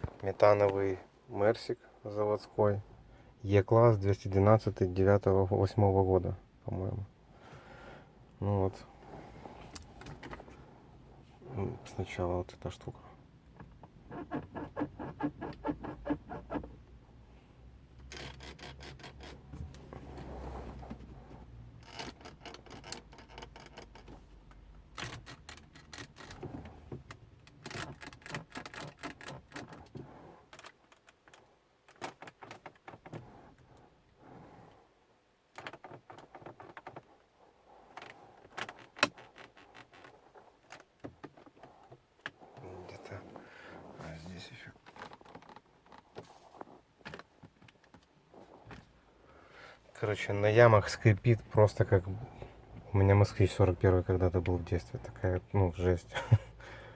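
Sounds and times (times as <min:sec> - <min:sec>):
car interior trim creaking: 0:13.5 - 0:16.9, 0:17.9 - 0:30.7, 0:37.8 - 0:49.0.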